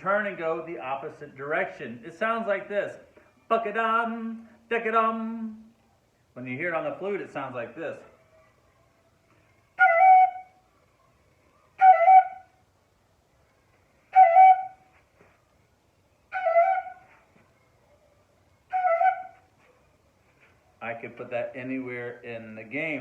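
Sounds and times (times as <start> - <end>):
flute playing short figure: 9.8 - 10.6, 11.8 - 12.6, 14.1 - 15.0, 16.3 - 17.2, 18.7 - 19.5.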